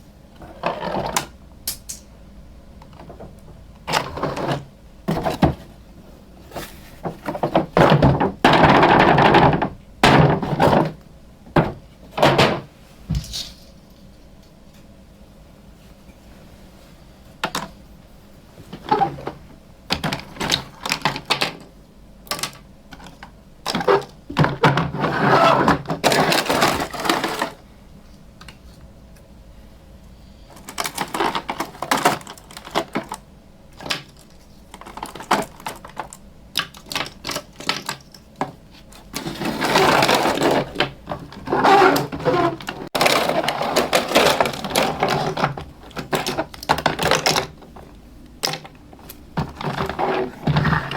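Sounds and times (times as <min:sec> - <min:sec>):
plastic pieces clattering: 0:22.3 - 0:27.6, 0:30.6 - 0:33.2, 0:33.8 - 0:50.9.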